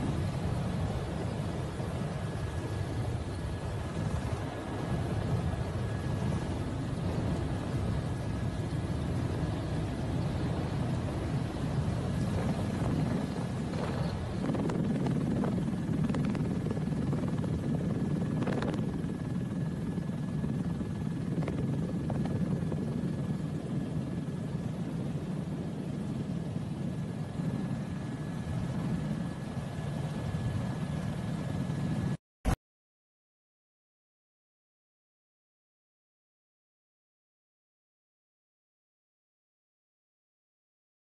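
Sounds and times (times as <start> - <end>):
helicopter running: 0.0 - 32.2.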